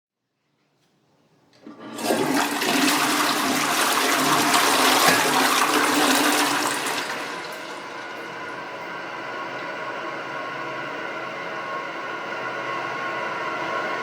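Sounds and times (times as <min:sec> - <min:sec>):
toilet flushing: 0:01.6 - 0:09.6.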